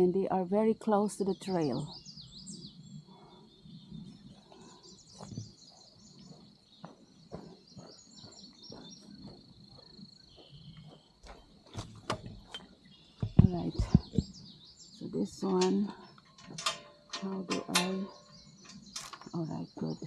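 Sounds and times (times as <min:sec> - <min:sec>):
birds chirping and trilling: 0:00.0 - 0:20.0
footsteps: 0:06.2 - 0:14.2.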